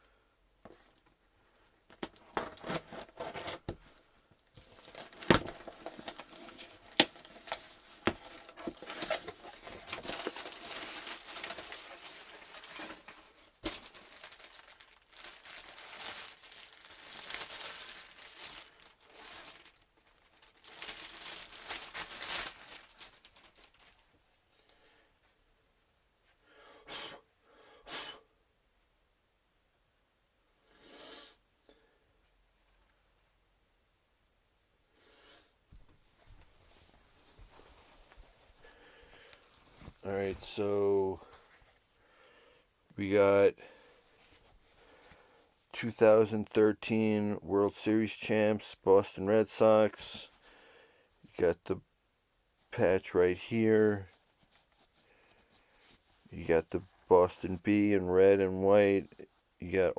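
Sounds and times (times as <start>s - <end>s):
package packaging tearing and crinkling: 1.9s - 3.7s, 4.6s - 24.1s.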